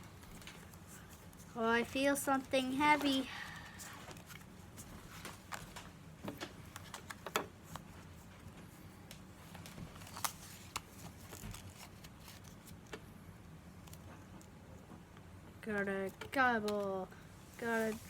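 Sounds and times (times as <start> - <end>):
foil wrapper and card rustling: 9.4 - 12.9.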